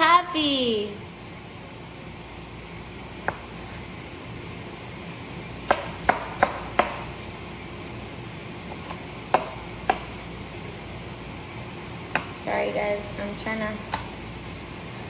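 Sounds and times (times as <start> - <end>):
knife chopping on cutting board: 3.2 - 3.5, 5.6 - 7.1, 8.8 - 10.1.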